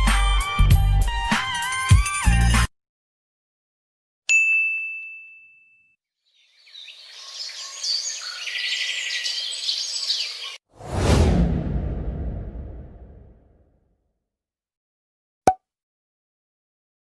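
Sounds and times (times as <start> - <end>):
bright bell ding: 4.3 - 5.9
birds chirping: 6.3 - 10.6.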